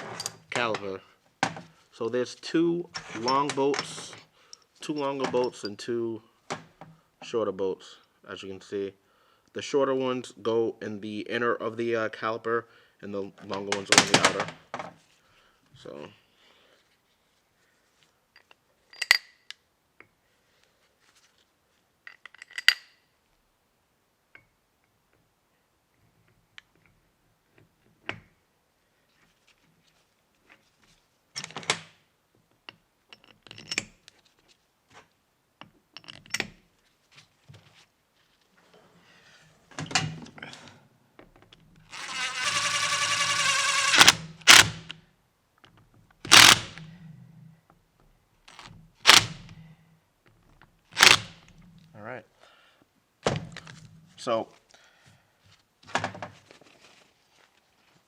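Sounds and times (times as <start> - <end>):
power tool running: 41.9 - 44.9, 46.3 - 46.8, 48.5 - 49.4, 51.0 - 51.3.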